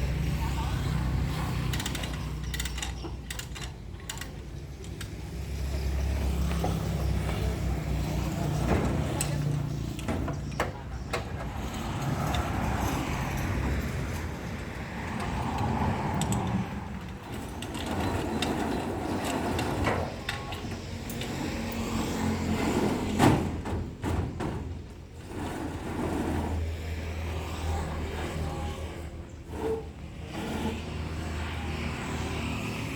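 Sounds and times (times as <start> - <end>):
metallic clicks and knocks: 1.7 - 5.2.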